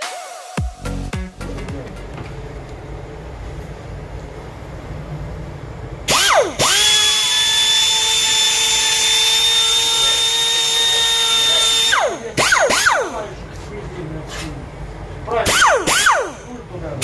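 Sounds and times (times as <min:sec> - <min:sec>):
power tool trigger blips: 0:06.1 - 0:13.1, 0:15.5 - 0:16.5
power tool whining: 0:06.1 - 0:13.2, 0:15.5 - 0:16.6.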